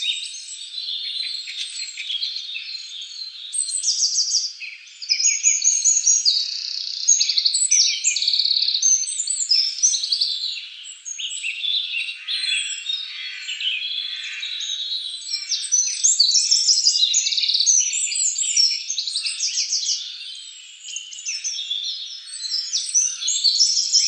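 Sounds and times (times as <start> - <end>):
chorus of high-pitched animal calls: 11.8 - 24.0.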